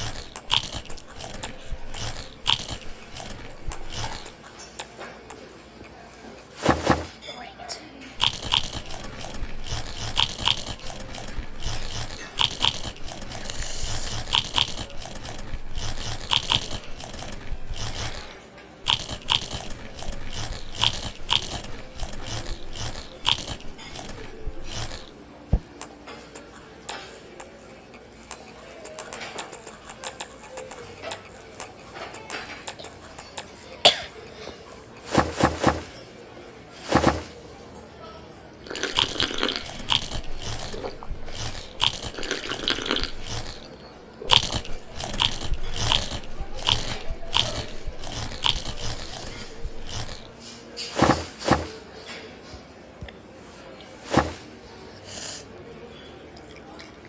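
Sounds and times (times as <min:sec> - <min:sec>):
things being handled: 0:05.8 - 0:07.4, 0:08.1 - 0:18.3, 0:18.9 - 0:25.8, 0:34.0 - 0:37.8, 0:38.7 - 0:52.3, 0:53.4 - 0:54.5.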